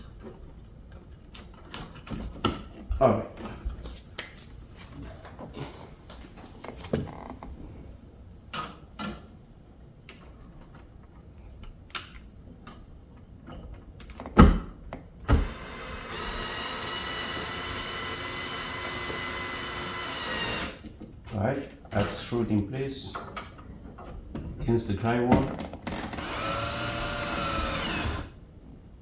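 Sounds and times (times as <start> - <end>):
power screwdriver motor running: 15.2 - 20.8, 26.2 - 28.3.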